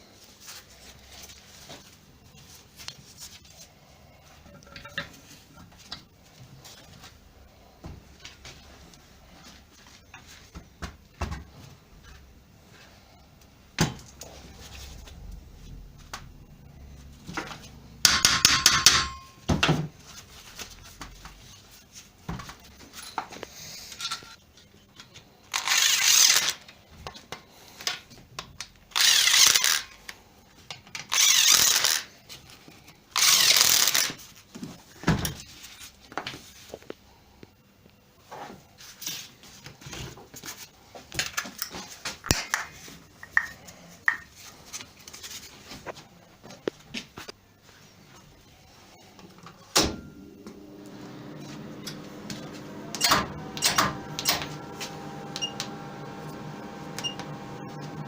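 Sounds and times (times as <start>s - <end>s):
power tool bursts: 29.0s - 29.8s.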